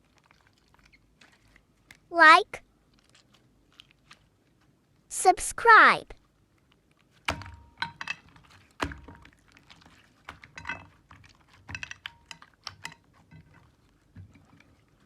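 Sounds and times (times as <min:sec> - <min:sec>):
slime squishing with sticky clicks: 0:08.8 - 0:13.2.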